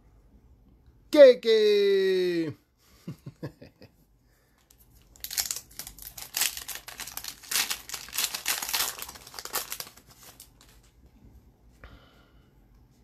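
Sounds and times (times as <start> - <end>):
card pack wrapper crinkling: 4.7 - 10.9.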